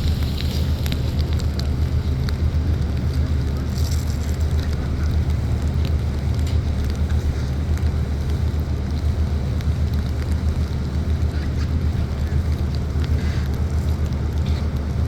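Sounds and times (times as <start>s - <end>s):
wind on microphone: 0.0s - 6.2s
boat engines droning: 0.0s - 15.0s.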